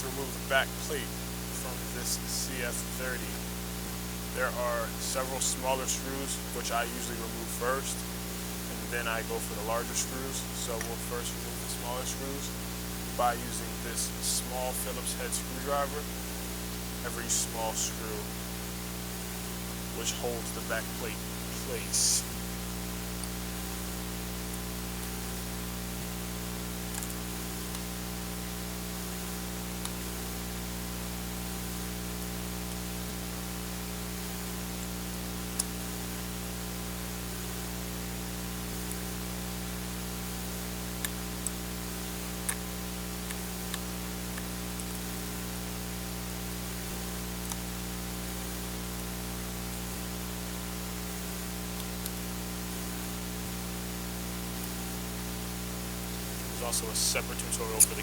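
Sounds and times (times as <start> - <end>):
recording hiss: 0.0 - 22.5, 55.9 - 58.0
electrical hum: 0.0 - 58.0.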